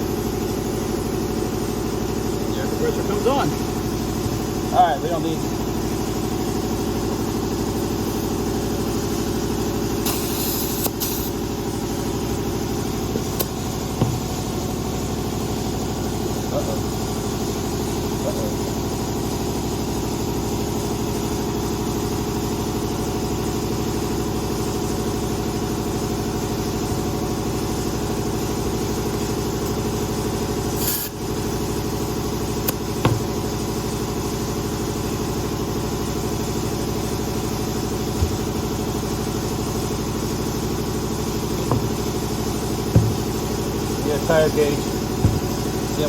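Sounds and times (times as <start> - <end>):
air compressor running: 0.0 - 46.0
air hissing: 10.0 - 11.4, 30.7 - 31.2, 41.5 - 45.9.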